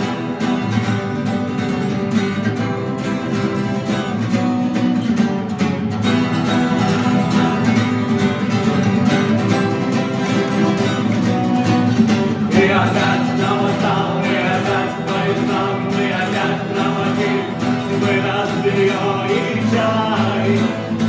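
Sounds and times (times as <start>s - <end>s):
acoustic guitar strumming chords: 0.0s - 21.0s.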